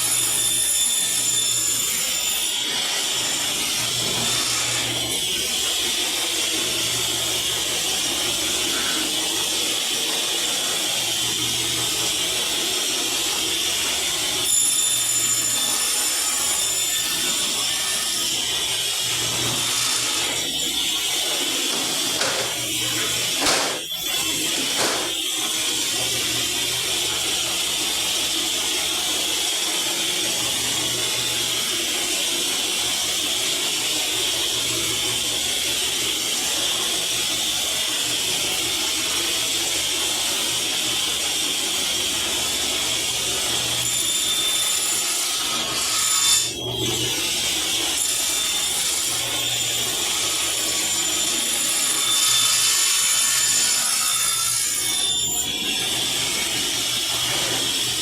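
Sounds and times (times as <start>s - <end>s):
electric saw cutting board: 0.0s - 58.0s.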